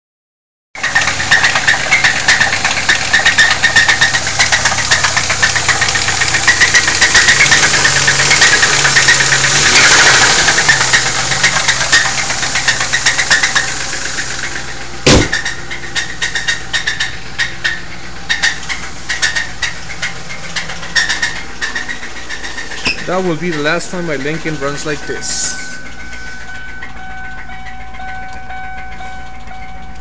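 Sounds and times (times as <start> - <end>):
engine rod knocking: 0.8 - 24.4
car engine running: 0.8 - 30.0
heavy bang: 15.0 - 15.6.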